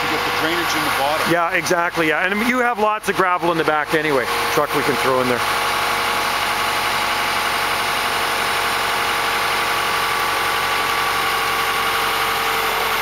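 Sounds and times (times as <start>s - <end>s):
backhoe engine idling: 0.0s - 13.0s.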